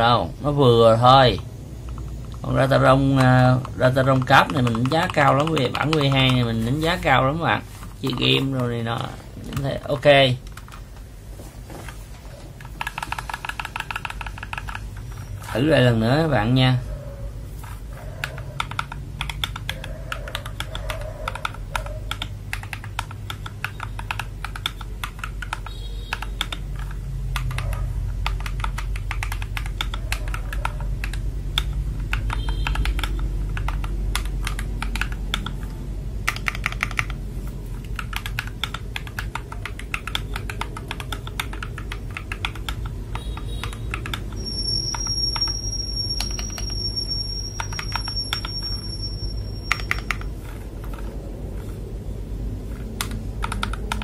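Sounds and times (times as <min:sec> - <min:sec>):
keyboard keystroke clacks: 0:01.3 - 0:07.3, 0:11.9 - 0:15.7, 0:17.9 - 0:45.6, 0:49.6 - 0:51.8, 0:52.6 - 0:54.0
high-pitched electronic beep: 0:44.4 - 0:50.3.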